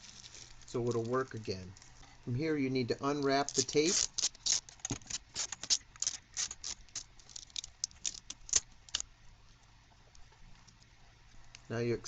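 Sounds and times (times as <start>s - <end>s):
tape peeling crackles and rips: 0.0s - 2.0s, 3.2s - 9.1s.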